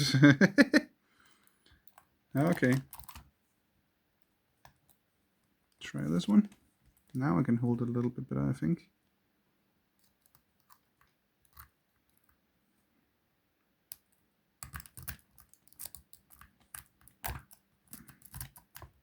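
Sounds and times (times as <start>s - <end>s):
lock picks clicking in lock: 1.8s - 3.3s, 13.9s - 19.0s.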